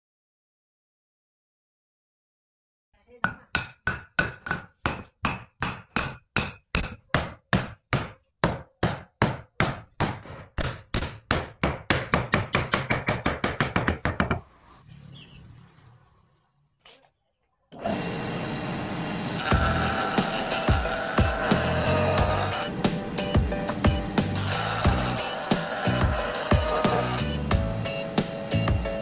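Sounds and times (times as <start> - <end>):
hammer striking wood: 3.2 - 14.4, 19.4 - 22.7, 24.2 - 27.2.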